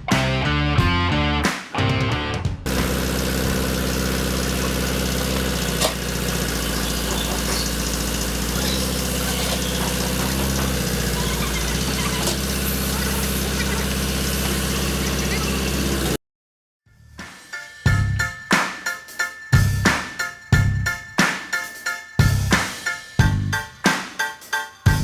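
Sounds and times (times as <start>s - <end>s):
diesel engine idling: 2.7s - 16.2s.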